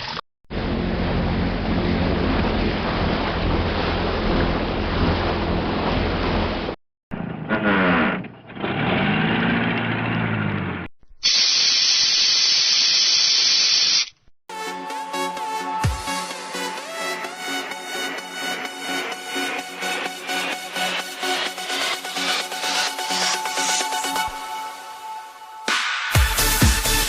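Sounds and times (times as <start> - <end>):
low engine hum: 0.5 - 10.9
ship's wake and waves: 0.7 - 6.8
motor turning gears: 7.1 - 14.2
gas valve hissing: 11.2 - 14.2
electronic dance music: 14.6 - 25.0, 25.6 - 27.0.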